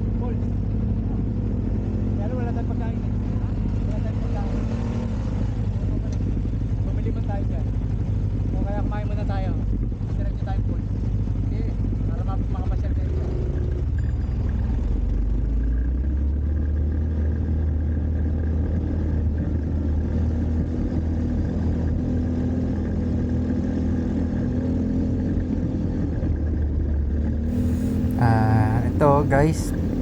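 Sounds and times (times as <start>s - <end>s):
engine droning: 27.5s - 30.0s.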